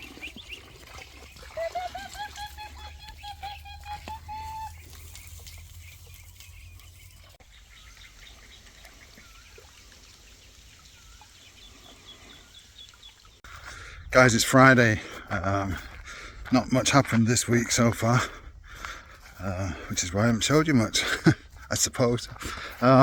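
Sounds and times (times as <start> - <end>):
faint bird calls: 0.0 - 13.4.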